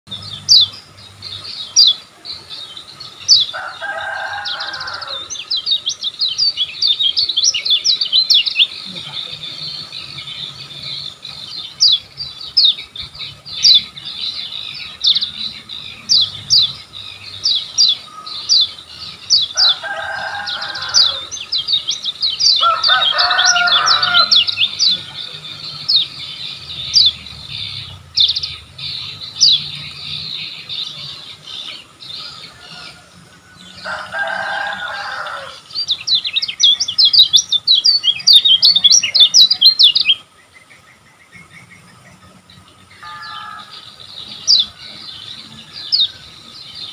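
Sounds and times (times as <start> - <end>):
small bird chirping song: 0.1 - 46.9
harsh bird call: 22.1 - 33.1, 42.9 - 46.3.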